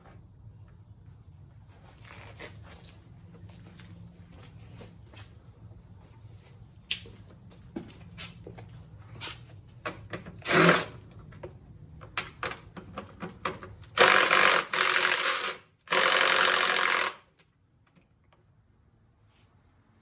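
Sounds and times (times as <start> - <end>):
power tool running: 14.0 - 17.2.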